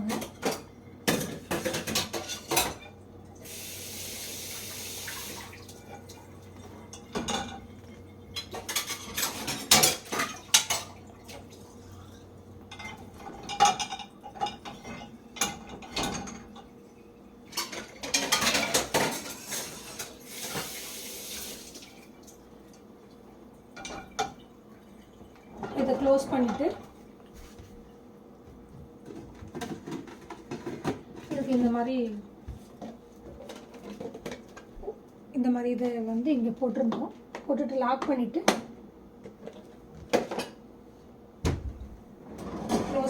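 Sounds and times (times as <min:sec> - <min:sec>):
dishes and spoons clattering: 0:00.0 - 0:03.0, 0:05.8 - 0:11.4, 0:12.7 - 0:16.8, 0:17.5 - 0:20.8, 0:23.8 - 0:24.4, 0:29.0 - 0:31.7.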